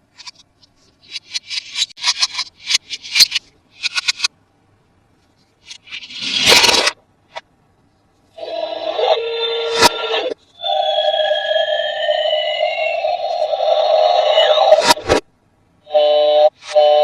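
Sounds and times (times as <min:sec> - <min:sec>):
electronic tone: 0:08.4 - 0:15.2.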